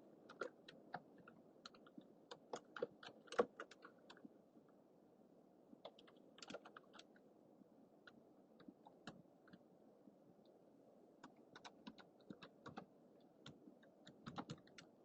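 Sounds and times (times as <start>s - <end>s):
steady low hiss: 0.0s - 15.0s
keyboard typing clicks: 0.3s - 1.0s, 1.6s - 4.2s, 5.8s - 7.1s, 11.2s - 14.9s.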